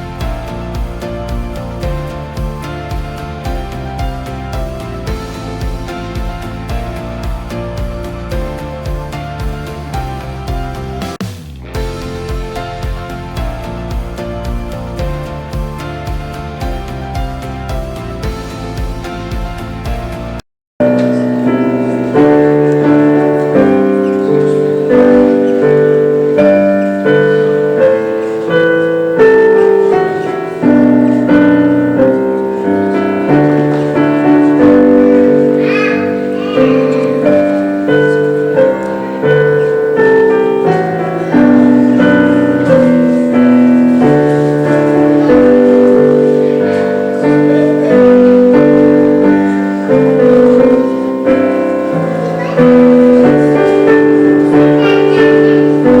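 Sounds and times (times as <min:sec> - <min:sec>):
piano playing slow chords: 0:00.0 - 0:56.0.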